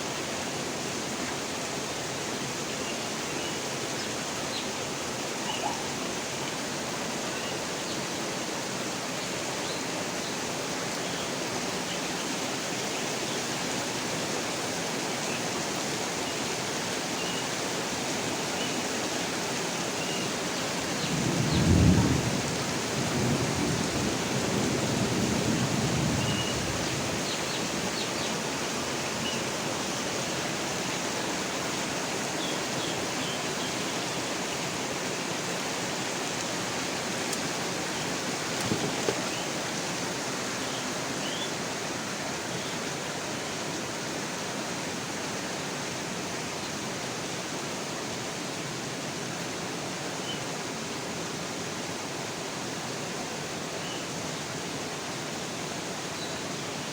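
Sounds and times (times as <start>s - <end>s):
steady rainfall: 0.0s - 56.9s
low roll of thunder: 21.0s - 27.2s.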